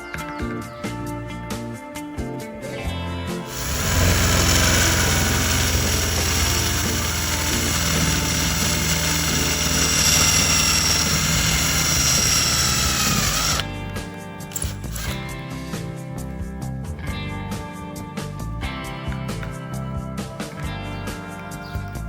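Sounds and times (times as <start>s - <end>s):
electric power tool whining: 3.5s - 15.3s.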